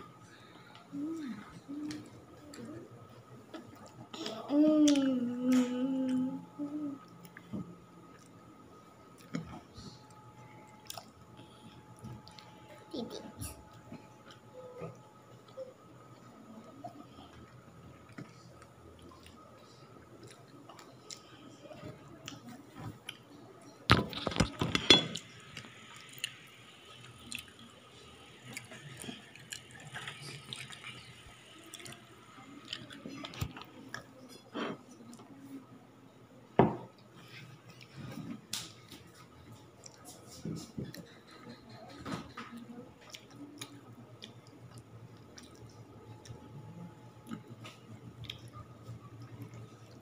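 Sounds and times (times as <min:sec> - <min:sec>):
dishes and cutlery clinking: 0:24.0 - 0:25.3.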